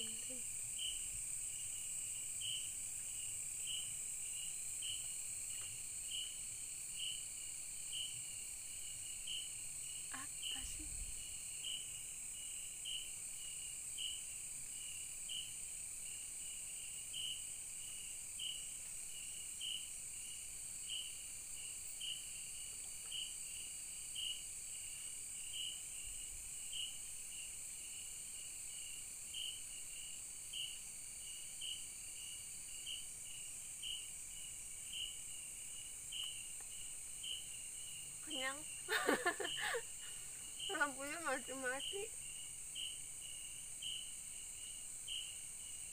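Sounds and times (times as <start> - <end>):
insect chirp: 0.0 - 45.9
insects shrilling: 38.2 - 43.0.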